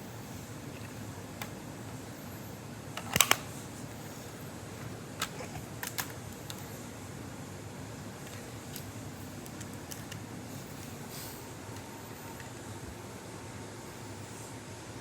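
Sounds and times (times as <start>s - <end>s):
steady background hum: 0.0s - 15.0s
plastic bricks clicking and snapping: 3.0s - 3.5s, 5.2s - 6.7s.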